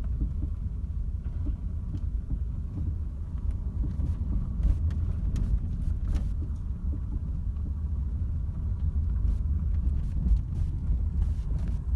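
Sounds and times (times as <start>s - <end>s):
road rumble: 0.0s - 11.9s.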